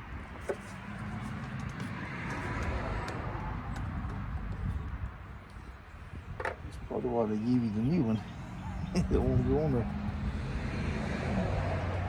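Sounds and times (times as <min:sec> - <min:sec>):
passing car road noise: 0:00.0 - 0:12.0.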